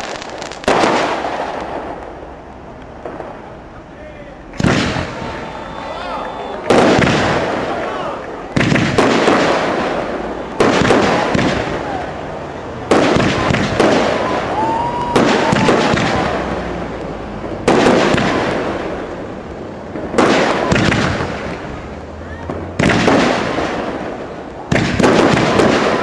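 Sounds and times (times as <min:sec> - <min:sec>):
fireworks bangs: 0:00.0 - 0:26.0
fireworks crackle: 0:00.0 - 0:26.0
firework whistle: 0:04.6 - 0:12.1, 0:12.9 - 0:16.9.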